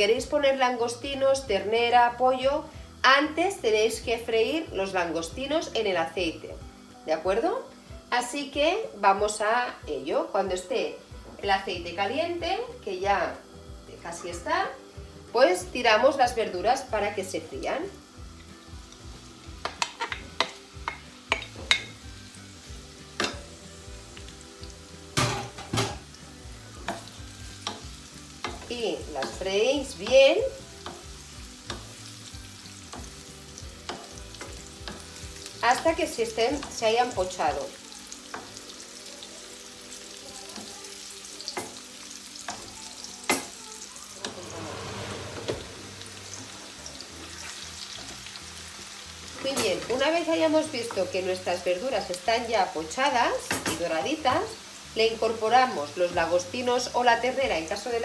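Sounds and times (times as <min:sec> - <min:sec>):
vegetables frying in oil: 0:00.0 - 0:58.0
utensil knocking against pan: 0:19.6 - 0:22.0, 0:25.2 - 0:26.1.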